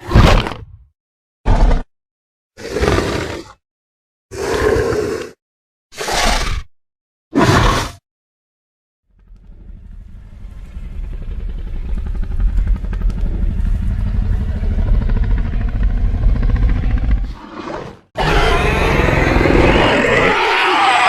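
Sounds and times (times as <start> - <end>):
creature roar: 4.3 - 5.4, 7.4 - 8.0, 17.2 - 21.0
creature rumbling growl: 9.2 - 21.0.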